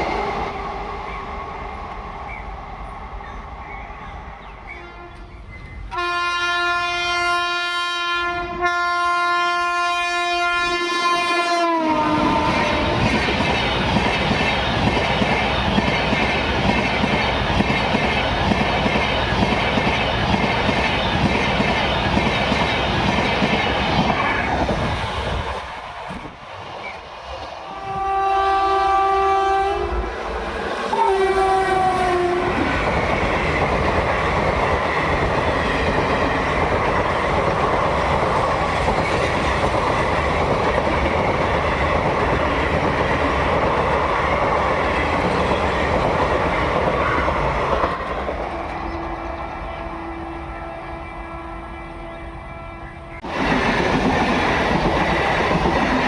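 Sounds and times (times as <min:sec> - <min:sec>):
train passing by: 0:00.0 - 0:56.0
train horn blasts: 0:04.7 - 0:13.0, 0:27.7 - 0:30.1, 0:30.9 - 0:32.7, 0:48.8 - 0:53.2.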